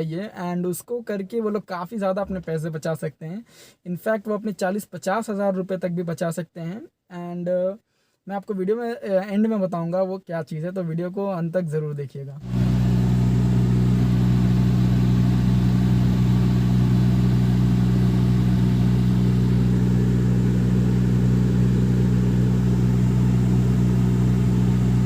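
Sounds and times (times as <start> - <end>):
car blower fan hum: 12.4 - 25.0
car engine idling: 12.4 - 25.0.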